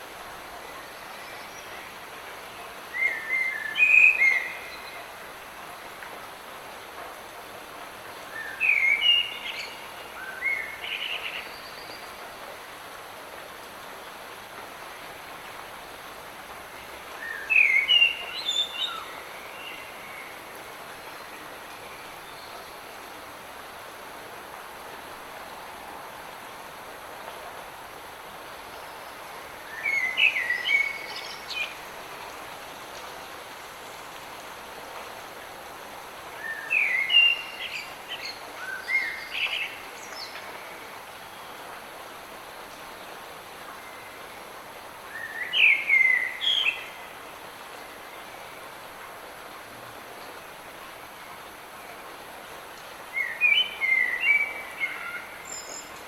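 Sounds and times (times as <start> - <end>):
light rain hissing: 0.0 - 56.0
songbird chirping: 28.4 - 34.4, 36.3 - 41.8, 52.4 - 56.0.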